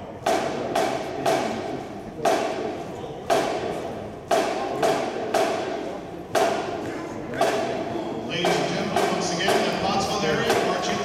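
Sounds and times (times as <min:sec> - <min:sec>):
ringing drum hits: 0:08.4 - 0:11.0.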